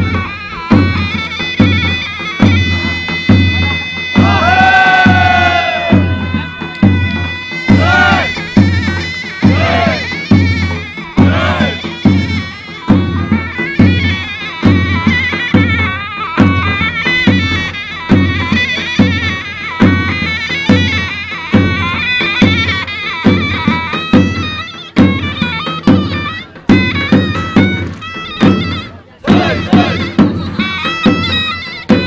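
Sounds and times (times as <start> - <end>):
shrill shawm melody: 0.0 - 32.0
bass drum beat: 4.2 - 12.2, 29.3 - 30.4.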